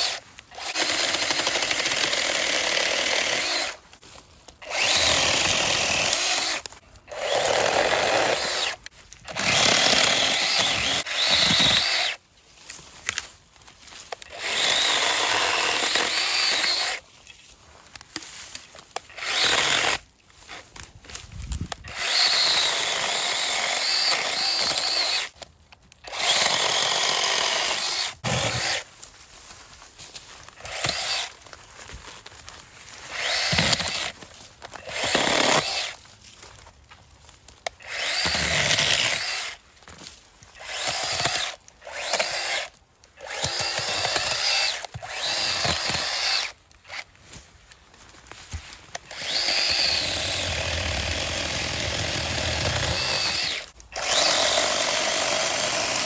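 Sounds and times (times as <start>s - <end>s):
battery chainsaw cutting branches: 0.0s - 3.9s, 4.6s - 12.2s, 14.1s - 17.0s, 18.9s - 20.6s, 21.4s - 25.4s, 26.0s - 28.9s, 30.5s - 31.5s, 33.0s - 36.0s, 37.6s - 39.6s, 40.5s - 47.2s, 48.7s - 56.0s.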